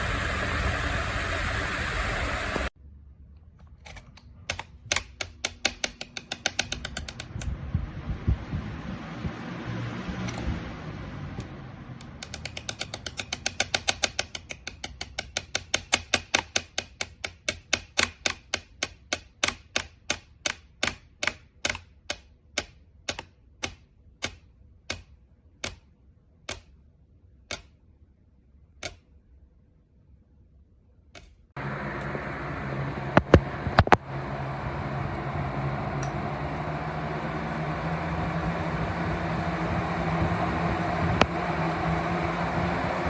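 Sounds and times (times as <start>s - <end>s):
fan blades ticking: 0.0s - 2.7s, 4.4s - 9.4s, 10.2s - 25.9s, 31.2s - 43.0s
fan airflow noise: 0.0s - 2.8s, 3.4s - 20.9s, 31.1s - 43.0s.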